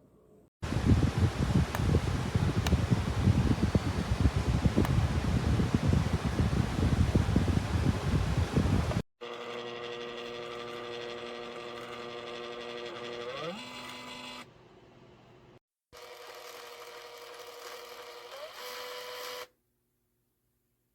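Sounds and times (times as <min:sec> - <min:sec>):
label maker motor whining: 0:09.2 - 0:14.5.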